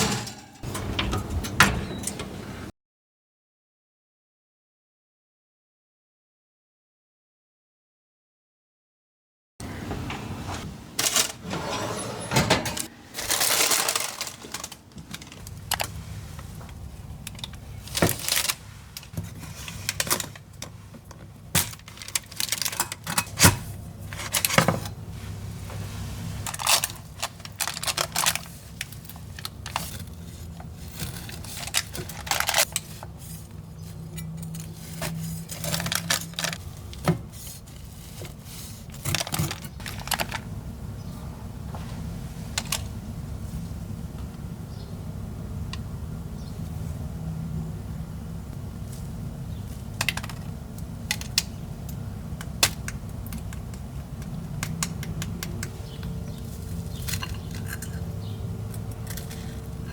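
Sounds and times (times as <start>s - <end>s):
scraping or rustling: 0.0s - 2.6s, 9.6s - 16.6s
utensils and dishes clinking: 0.0s - 2.7s, 9.6s - 15.8s, 26.5s - 36.6s, 54.6s - 59.9s.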